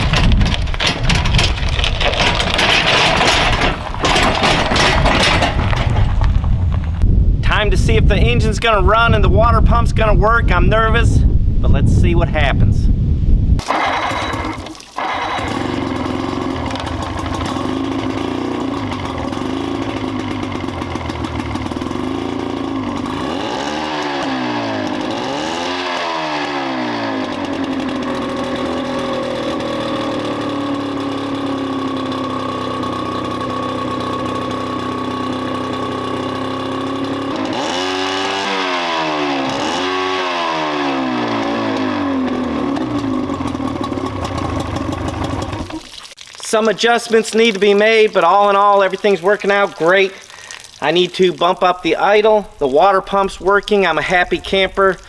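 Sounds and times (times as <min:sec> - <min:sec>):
outboard motor running: 0:00.0 - 0:07.0, 0:13.6 - 0:46.1.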